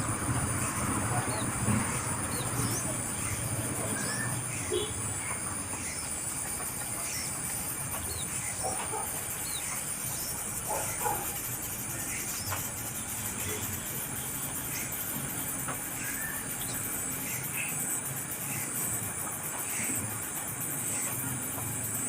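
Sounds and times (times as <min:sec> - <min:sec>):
steady background hiss: 0:00.0 - 0:22.0
faint bird chirps: 0:07.0 - 0:18.8.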